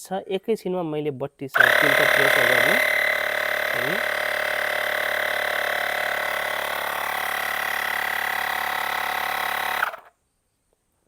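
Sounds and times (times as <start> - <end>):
air compressor humming: 1.6 - 10.1.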